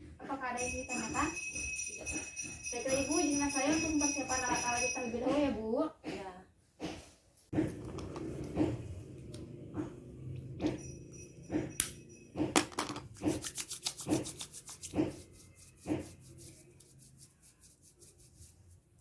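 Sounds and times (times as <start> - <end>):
equipment knocking and rubbing: 12.4 - 16.6.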